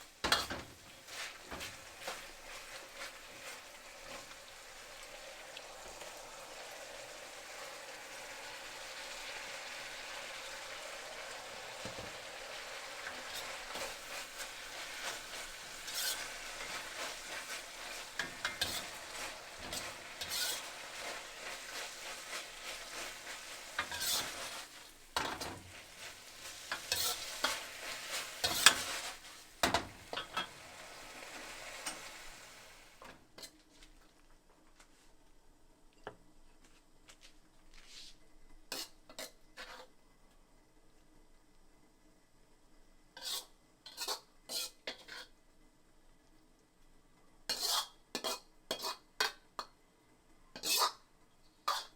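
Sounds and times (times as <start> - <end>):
spatula scraping and knocking pan: 0.0 - 4.4, 11.8 - 32.4
food sizzling in a pan: 0.0 - 33.5, 38.7 - 40.0, 43.2 - 45.4, 47.4 - 49.8, 50.5 - 51.9.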